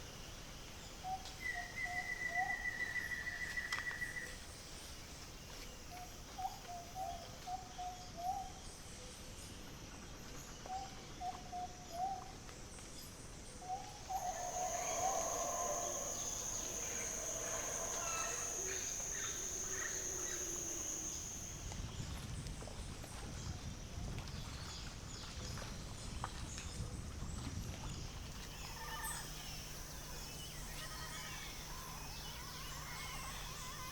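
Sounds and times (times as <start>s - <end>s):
wild birds calling: 14.0s - 21.6s
steady high-pitched tone: 14.1s - 21.6s
high whistle: 14.2s - 21.6s.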